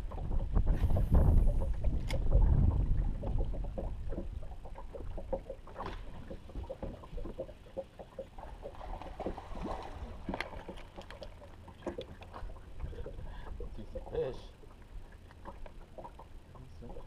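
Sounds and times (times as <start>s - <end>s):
low rumble: 0.0s - 5.6s
water lapping against boat hull: 0.0s - 17.0s.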